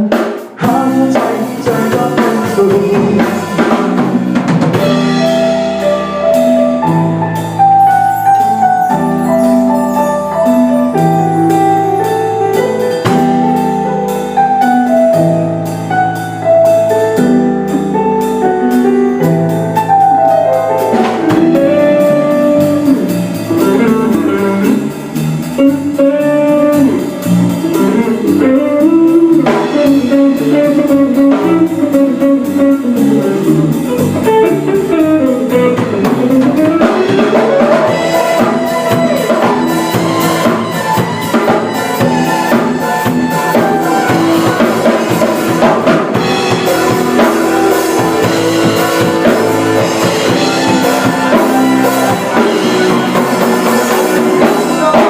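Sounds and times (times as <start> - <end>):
bass line: 0.0 - 55.0
drum kit: 0.0 - 55.0
guitar: 0.0 - 55.0
lead melody: 0.0 - 55.0
held chords: 0.6 - 55.0.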